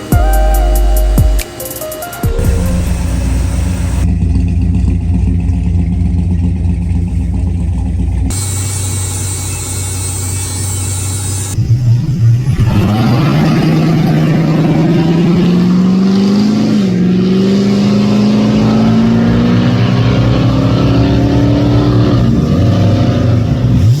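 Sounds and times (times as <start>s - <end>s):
car engine accelerating through gears: 2.3s - 8.9s, 11.6s - 24.0s.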